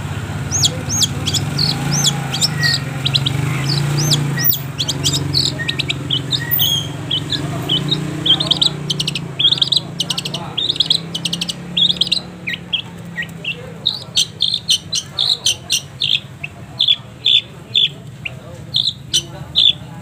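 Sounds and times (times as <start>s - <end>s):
bird singing sharp chirps and whistles: 0.4s - 19.9s.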